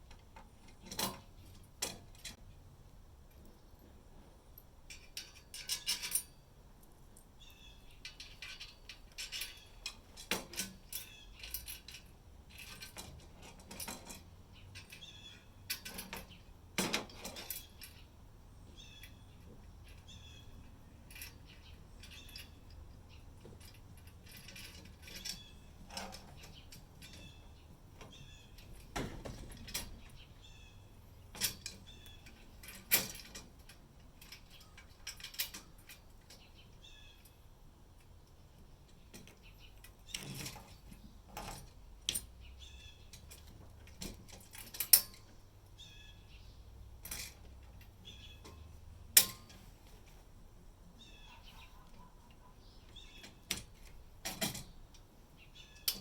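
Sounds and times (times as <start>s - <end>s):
furniture hardware clicking and clattering: 19.8s - 27.4s, 31.3s - 36.6s, 47.0s - 50.1s, 53.2s - 55.0s.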